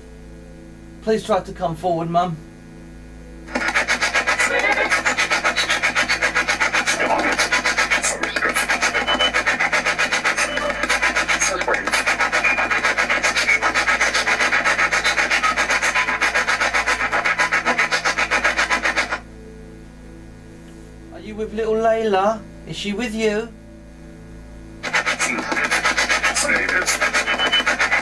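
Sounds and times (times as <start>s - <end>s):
choppy radio static pulses: 3.1s - 19.3s, 24.8s - 28.0s.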